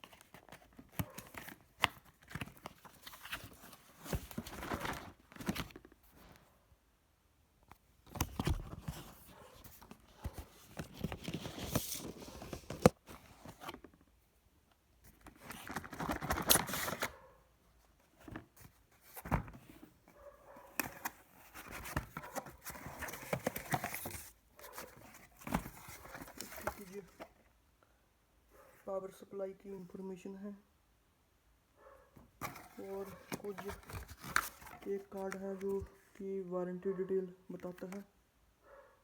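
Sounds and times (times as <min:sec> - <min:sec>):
cardboard box rustling: 0:00.0 - 0:06.3, 0:08.1 - 0:14.0, 0:20.7 - 0:27.5, 0:32.4 - 0:36.2
cardboard scraping: 0:32.4 - 0:36.1.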